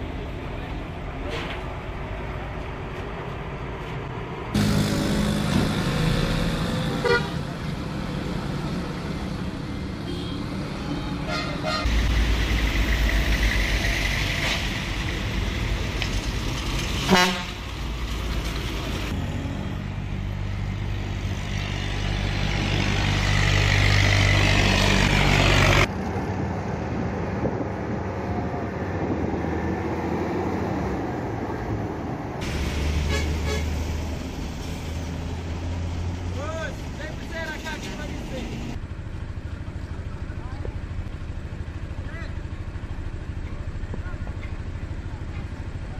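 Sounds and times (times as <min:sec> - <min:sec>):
bus engine running: 0:00.0 - 0:45.9
horn toots: 0:06.9 - 0:07.5, 0:11.2 - 0:12.0, 0:17.1 - 0:17.6, 0:33.0 - 0:33.8.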